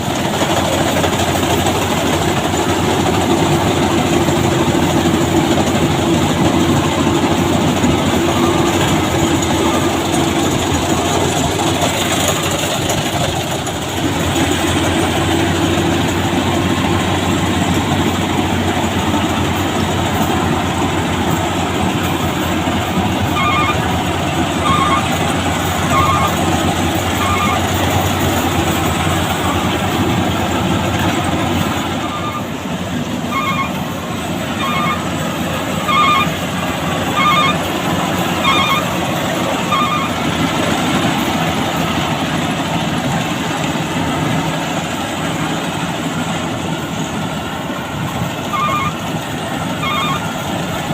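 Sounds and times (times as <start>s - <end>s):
combine harvester running: 0.0s - 50.9s
short beeps: 23.3s - 23.9s, 25.9s - 26.4s, 27.2s - 27.8s, 32.0s - 32.5s, 33.3s - 33.8s, 34.6s - 35.0s, 35.8s - 36.4s, 37.1s - 37.7s, 38.4s - 39.0s, 39.6s - 40.2s, 48.5s - 49.0s, 49.8s - 50.3s.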